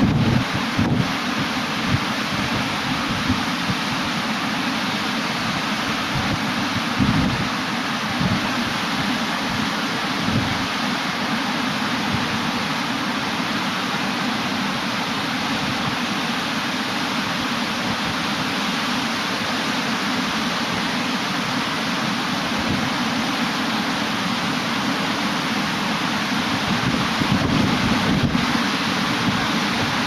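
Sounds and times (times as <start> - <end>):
wind buffeting microphone: 0.0 - 1.2, 6.1 - 8.6, 26.6 - 28.6
ocean surf rushing: 0.0 - 30.0.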